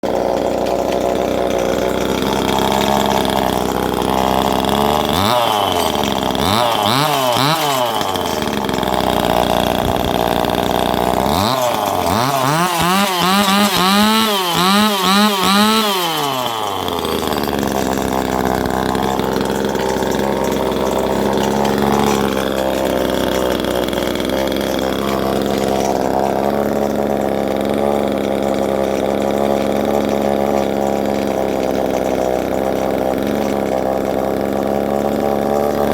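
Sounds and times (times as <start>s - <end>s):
chainsaw engine revving: 0.0s - 35.9s.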